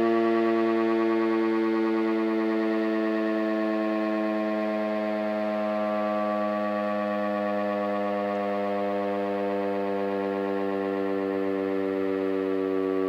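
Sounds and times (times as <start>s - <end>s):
electromechanical warning siren: 0.0s - 13.0s.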